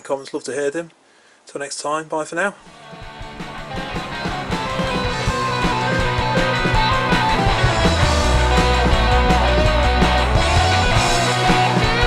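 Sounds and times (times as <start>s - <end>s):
guitar-led rock music: 2.6s - 12.0s
heavy bass: 2.8s - 12.0s.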